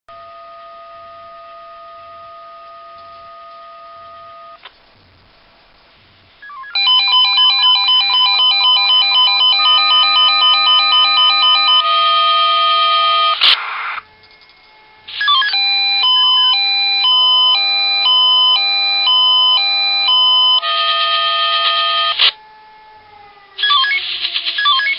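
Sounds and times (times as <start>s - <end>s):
pager beeping melodies: 6.4s - 13.4s, 15.2s - 22.2s, 23.6s - 24.9s.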